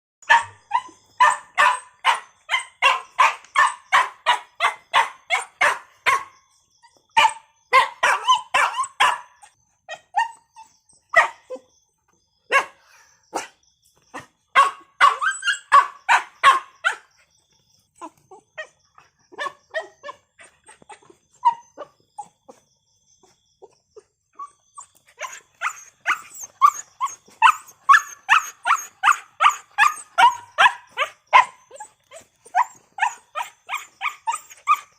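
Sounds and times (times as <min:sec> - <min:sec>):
dog barking: 0:00.2 - 0:06.4, 0:07.2 - 0:09.5, 0:11.1 - 0:11.6, 0:12.5 - 0:17.1, 0:19.3 - 0:20.2, 0:25.2 - 0:34.9.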